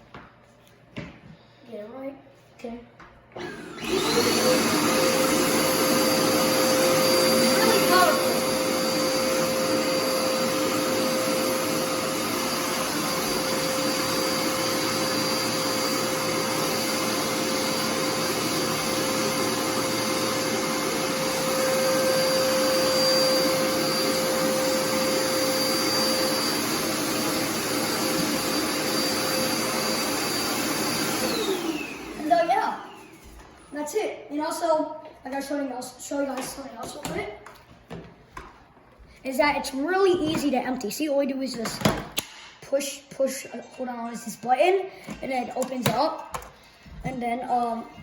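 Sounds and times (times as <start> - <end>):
vacuum motor winding down: 3.4 - 33.2
vacuum cleaner running: 3.4 - 33.8.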